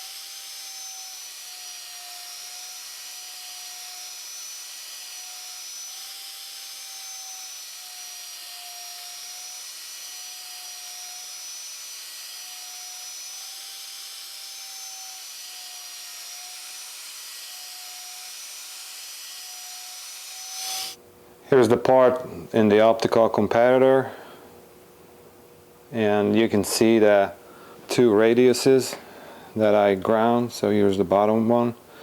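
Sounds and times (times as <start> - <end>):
surface grinder whining: 14.8 - 21.0.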